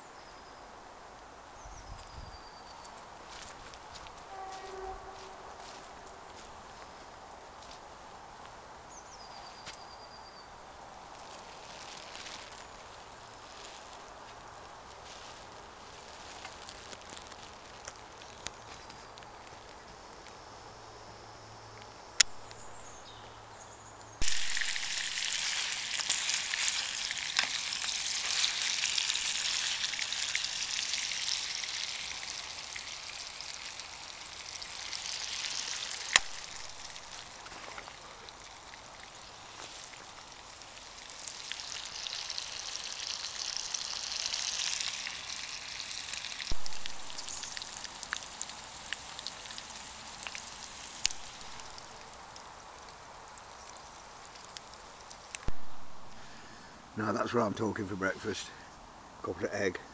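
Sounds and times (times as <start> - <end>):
bacon sizzling in a frying pan: 24.2 - 52.8
sharp clicks and spits: 24.2 - 53.8.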